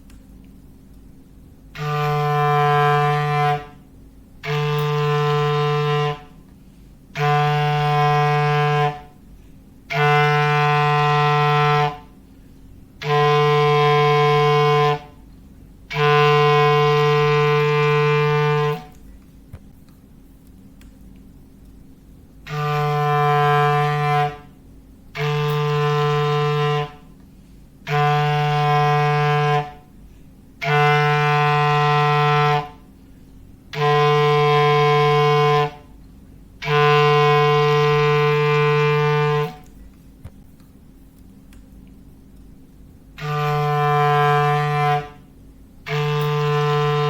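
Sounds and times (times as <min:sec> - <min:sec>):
clarinet low note blasts: 0:01.7 - 0:06.5, 0:07.1 - 0:09.2, 0:09.9 - 0:12.2, 0:13.0 - 0:15.3, 0:15.9 - 0:19.0, 0:22.4 - 0:27.2, 0:27.8 - 0:30.0, 0:30.6 - 0:33.0, 0:33.7 - 0:36.0, 0:36.6 - 0:39.7, 0:43.1 - 0:47.0.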